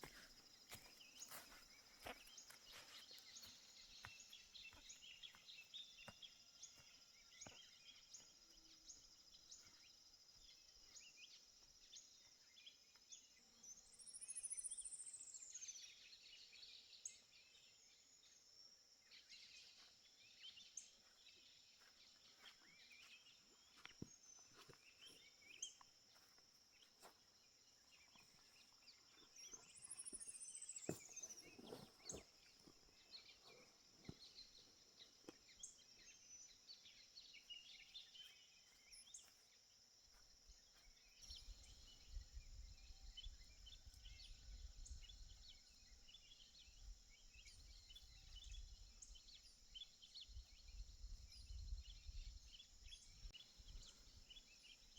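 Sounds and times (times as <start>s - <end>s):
bird chirps: 19.2s - 39.5s.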